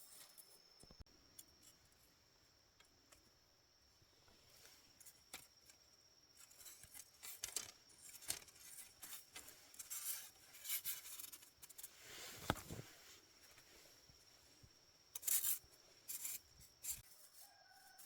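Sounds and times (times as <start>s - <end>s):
rustling and scraping handling: 4.2s - 18.0s.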